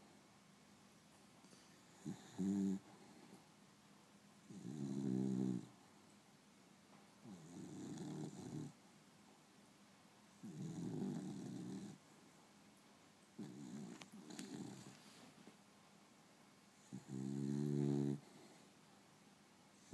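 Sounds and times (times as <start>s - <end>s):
dog snoring: 1.8s - 3.4s, 4.4s - 5.8s, 7.2s - 8.8s, 10.4s - 12.0s, 13.4s - 15.1s, 16.8s - 18.7s.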